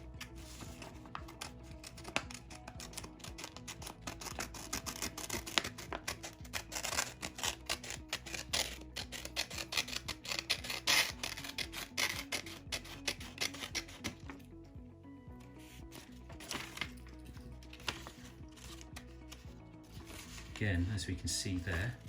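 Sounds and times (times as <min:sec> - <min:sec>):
quiet background music: 0:00.0 - 0:22.0
paper rustle: 0:00.2 - 0:14.3, 0:15.6 - 0:20.9
small scissors snipping paper: 0:00.7 - 0:14.4, 0:17.7 - 0:19.4.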